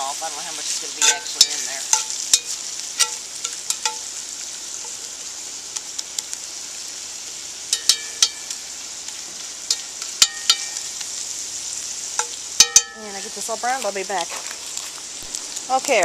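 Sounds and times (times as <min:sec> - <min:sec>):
meat sizzling in a pan: 0:00.0 - 0:16.0
utensil scraping a pan: 0:00.2 - 0:04.1.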